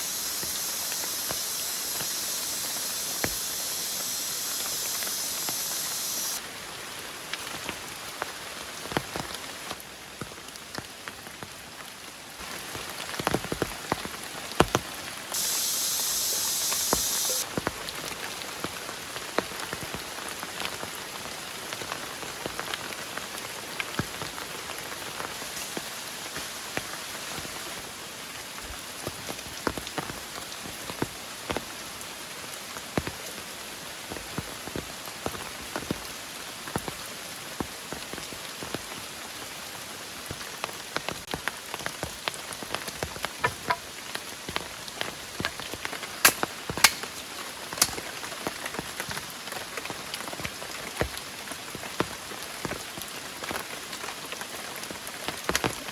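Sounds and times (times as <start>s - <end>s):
loud high hiss: 0.0s - 6.4s, 15.3s - 17.5s
heavy rain falling: 0.0s - 55.9s
raindrops striking close by: 0.0s - 55.9s.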